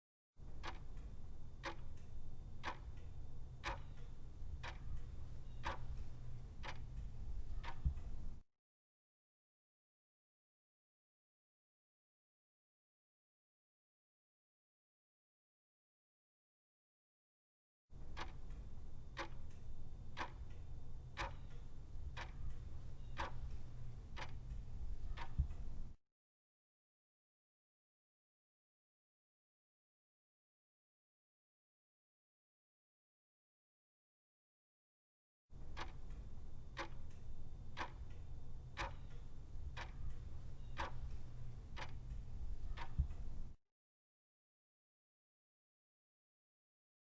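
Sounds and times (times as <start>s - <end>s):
clock ticking: 0.4s - 8.4s, 18.0s - 26.0s, 35.6s - 43.6s
steady low hum: 0.4s - 8.4s, 18.0s - 26.0s, 35.6s - 43.6s
faint clicks: 0.5s - 8.4s, 18.0s - 26.0s, 35.6s - 43.6s.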